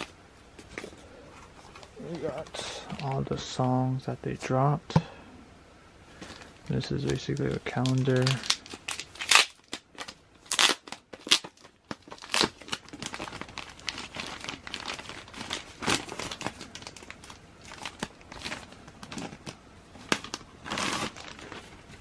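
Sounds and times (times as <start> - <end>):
packaging crinkling and tearing: 6.2 - 22.0.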